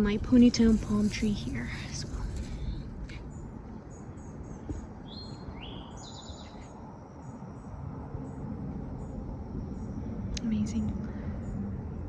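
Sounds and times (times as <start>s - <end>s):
small birds chirping: 0.0s - 11.7s
low background rumble: 0.0s - 12.0s.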